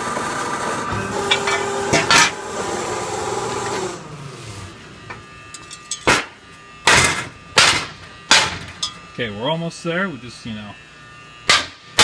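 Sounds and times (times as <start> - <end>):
tool rasping metal: 0.9 - 2.7.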